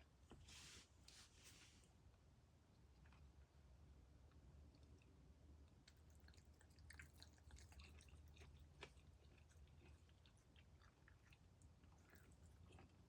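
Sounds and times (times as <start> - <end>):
cat chewing bones: 5.0 - 13.0.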